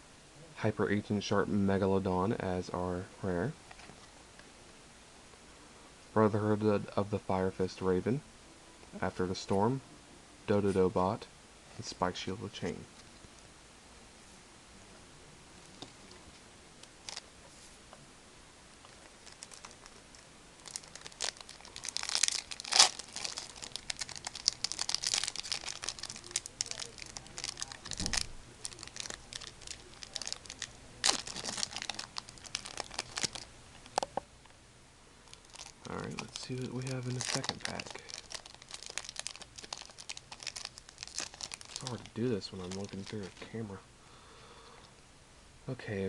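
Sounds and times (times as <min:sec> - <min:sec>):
foil wrapper crinkling and tearing: 0:17.0 - 0:17.2, 0:18.8 - 0:34.0, 0:35.2 - 0:43.5.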